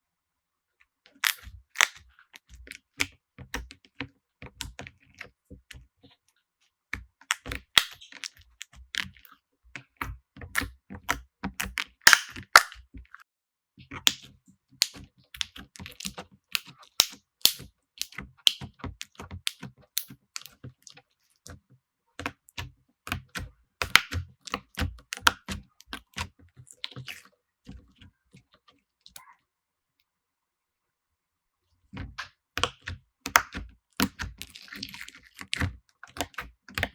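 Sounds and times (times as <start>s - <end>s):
slime clicking and popping: 1.2s - 2.5s, 7.2s - 9.2s, 10.0s - 12.9s, 14.0s - 20.9s, 22.2s - 27.2s, 32.2s - 36.9s.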